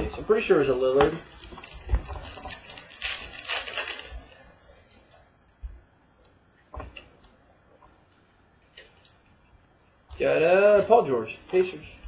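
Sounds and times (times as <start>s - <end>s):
wrapper and cards rustling: 1.3s - 5.2s.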